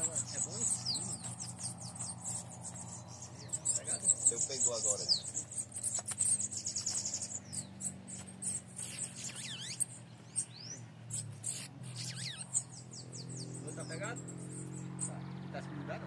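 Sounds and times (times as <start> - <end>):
songbirds chirping and trilling: 0.0 - 16.0.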